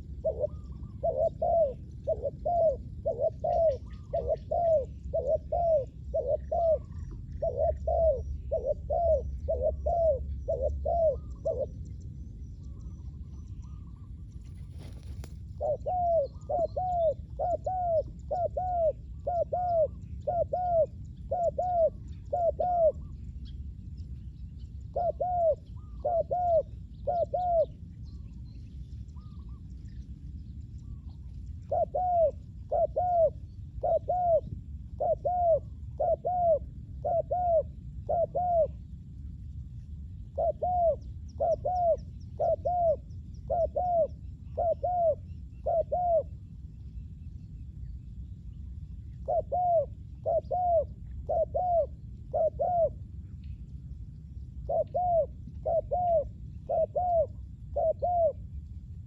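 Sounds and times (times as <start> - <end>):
dove cooing: 0.0 - 11.9, 13.6 - 23.1, 24.9 - 27.8, 30.9 - 38.8, 40.3 - 46.4, 49.2 - 53.1, 54.6 - 58.4
steady low rumble: 0.0 - 59.0.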